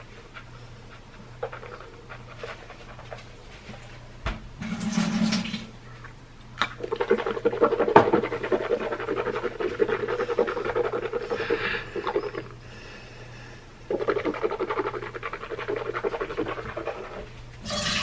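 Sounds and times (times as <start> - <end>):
mouth swishing liquid: 6.8 - 12.9, 13.8 - 18.0.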